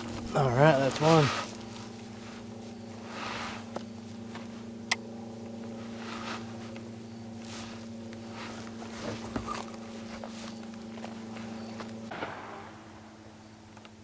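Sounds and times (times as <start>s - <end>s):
machine hum with low drone: 0.0s - 14.0s
rustling and handling noises: 5.4s - 12.0s.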